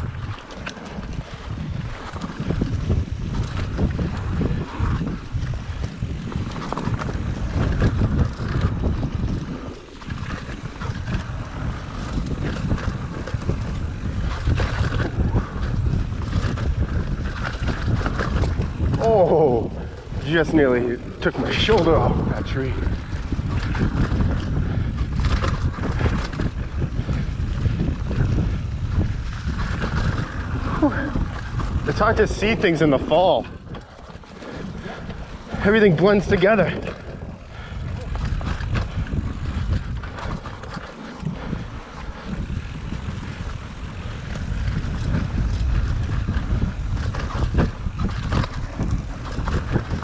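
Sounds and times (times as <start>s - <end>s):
bike rattling: 0.0s - 50.0s
wind buffeting microphone: 0.0s - 50.0s
tyres rumbling on dirt: 1.8s - 50.0s
sharp knocks over trail bumps: 10.1s - 21.9s.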